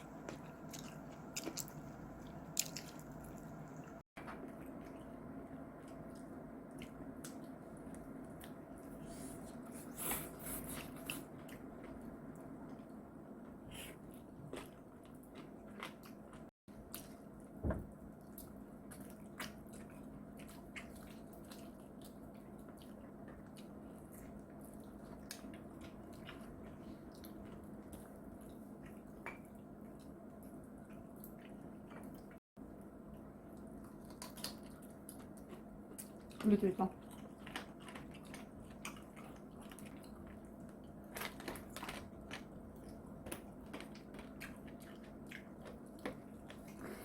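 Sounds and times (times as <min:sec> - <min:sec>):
chewing fried chicken: 0:00.0 - 0:47.0
low steady hum: 0:00.0 - 0:47.0
crisp crunches: 0:41.1 - 0:42.5.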